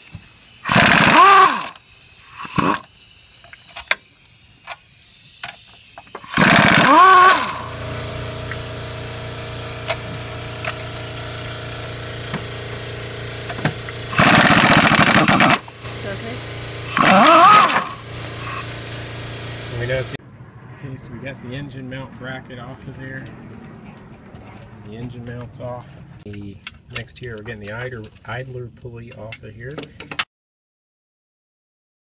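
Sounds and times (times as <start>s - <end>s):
power driver spinning: 0.6s - 20.2s.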